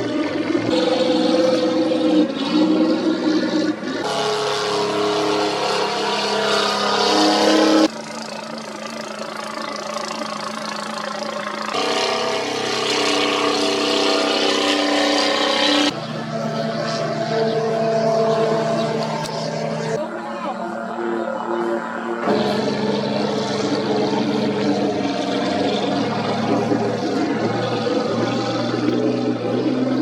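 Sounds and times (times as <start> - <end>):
churned water and spray hiss: 0.0 - 15.9
racing boat engines: 0.0 - 30.0.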